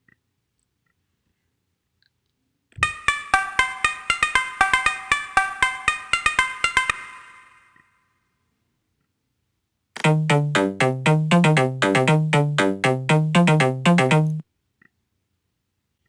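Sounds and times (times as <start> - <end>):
synthesizer riff: 10.0 - 14.4.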